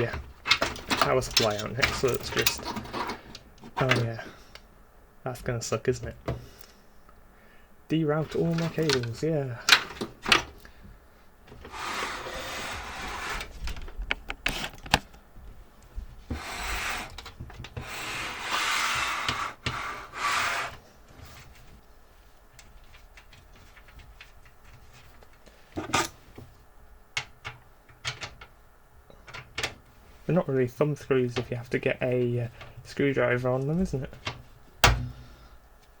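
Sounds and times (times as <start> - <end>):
cables scraping through computer case: 0.4 - 4.2, 11.5 - 13.8, 16.3 - 21.5.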